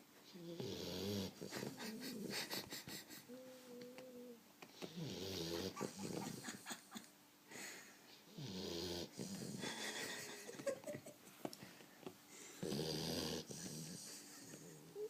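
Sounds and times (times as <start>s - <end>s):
puppy snoring: 0.4s - 2.5s, 3.3s - 6.6s, 8.3s - 10.0s, 12.6s - 15.0s.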